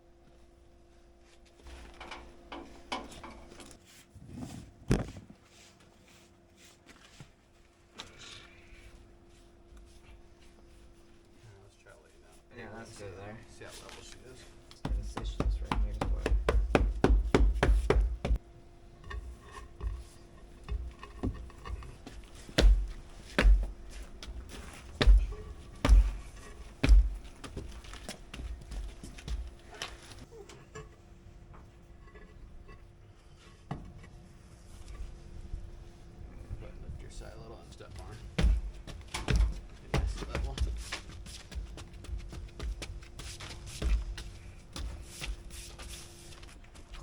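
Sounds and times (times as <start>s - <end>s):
faint steady hum: 0.0s - 47.0s
heavy thumps: 14.8s - 18.4s, 19.8s - 29.8s, 38.0s - 45.5s
scattered knocks: 14.8s - 18.4s
scuffing and knocking: 14.8s - 18.4s, 19.5s - 30.3s, 38.0s - 47.0s
hand tool chopping into ground: 22.5s - 23.8s, 24.9s - 27.6s.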